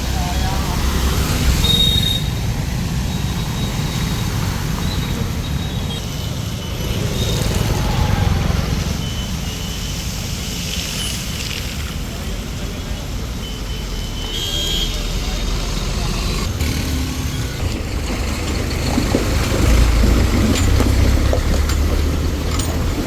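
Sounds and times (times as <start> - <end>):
vehicle passing: 0.0 - 9.1
road traffic rumble: 0.0 - 23.0.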